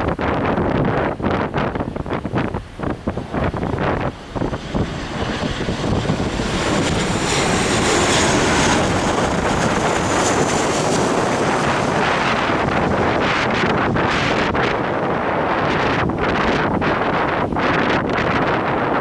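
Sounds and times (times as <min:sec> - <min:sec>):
jet airliner engine noise: 0:00.0 - 0:19.0
wind gusts on microphone: 0:00.0 - 0:19.0.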